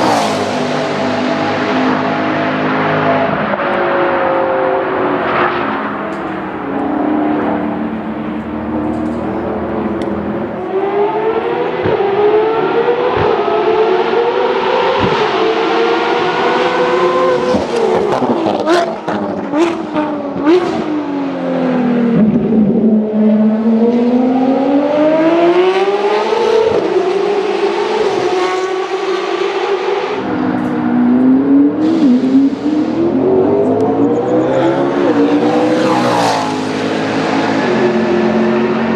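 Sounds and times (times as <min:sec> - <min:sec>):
race car engine revving: 0:00.0 - 0:38.9.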